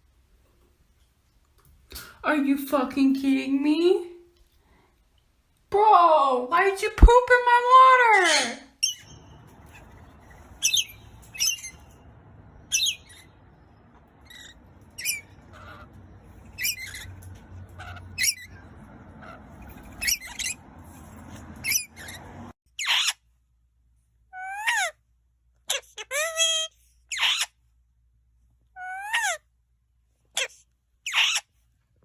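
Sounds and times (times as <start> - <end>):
parrot chirping and squawking: 8.1 - 23.3, 24.3 - 25.0, 25.6 - 27.6, 28.7 - 29.5, 30.3 - 31.6.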